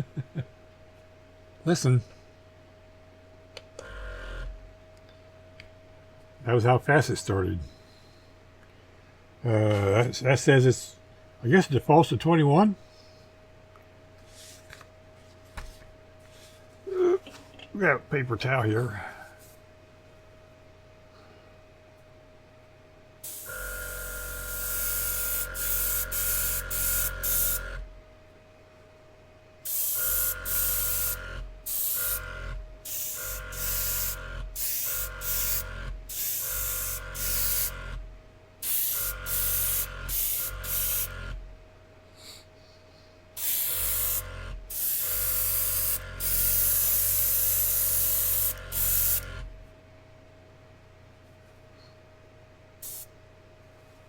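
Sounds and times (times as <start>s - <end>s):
small compressor humming: 0.0s - 8.6s, 18.8s - 50.2s, 52.7s - 53.6s
airbrush air hiss bursts: 23.2s - 27.8s, 29.7s - 38.0s, 38.6s - 41.4s, 43.4s - 49.4s, 52.8s - 53.1s.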